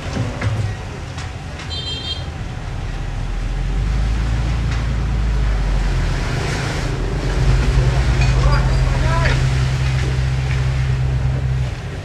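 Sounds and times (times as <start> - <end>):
diesel engine running under load: 2.4 - 12.0.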